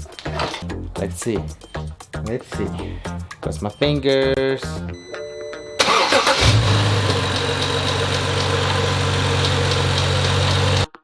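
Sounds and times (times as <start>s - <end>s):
engine starter cranking: 5.8s - 10.9s
car engine idling: 5.8s - 11.0s.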